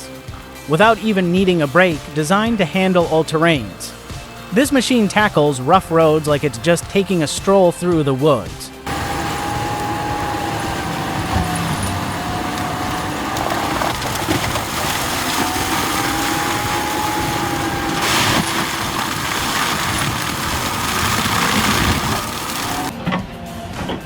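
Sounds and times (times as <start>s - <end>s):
mulcher engine and cutter din: 0.0s - 22.9s
mulcher shredding rasp: 8.9s - 22.9s.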